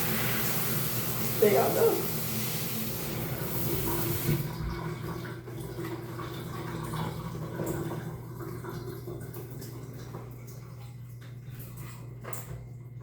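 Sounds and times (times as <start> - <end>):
shower head spraying water: 0.0 - 4.5.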